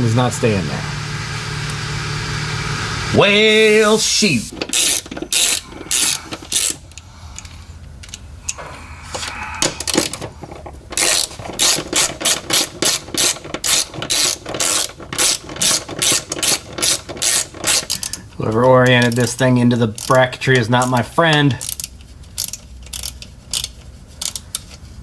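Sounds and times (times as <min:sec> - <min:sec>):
socket ratchet clicking: 0:04.5 - 0:08.6, 0:11.0 - 0:24.8.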